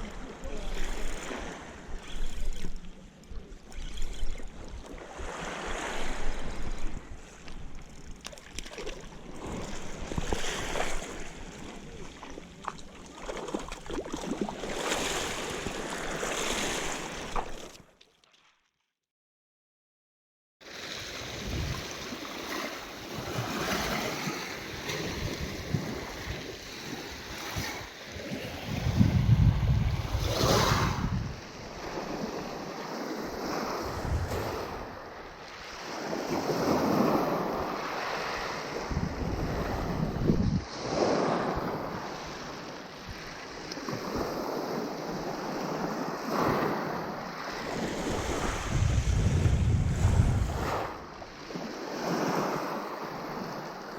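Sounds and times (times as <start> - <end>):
wind buffeting microphone: 28.4 - 32.3, 33.4 - 35.3, 38.7 - 42.1, 47.8 - 51.1.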